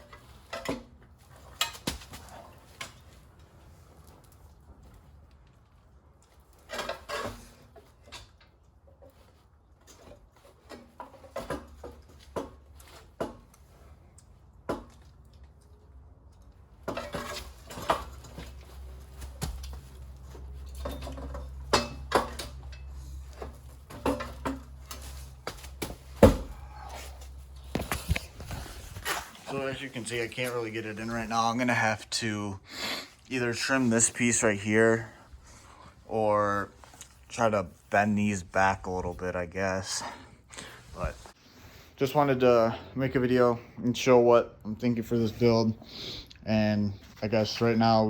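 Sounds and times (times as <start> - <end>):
metal clanks and knocks: 16.8 - 28.3.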